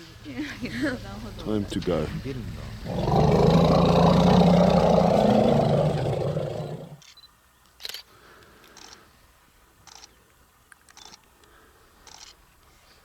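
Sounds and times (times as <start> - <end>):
vehicle engine running: 0.4 - 7.0
faint clicks: 7.0 - 9.1, 9.8 - 12.7.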